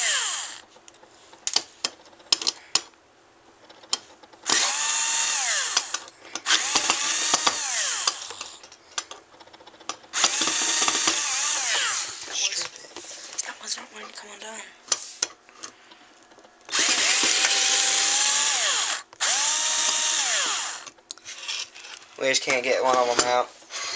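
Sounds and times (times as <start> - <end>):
power drill whining: 0.0 - 0.7, 4.4 - 8.6, 10.1 - 12.3, 16.7 - 22.0, 22.9 - 23.9.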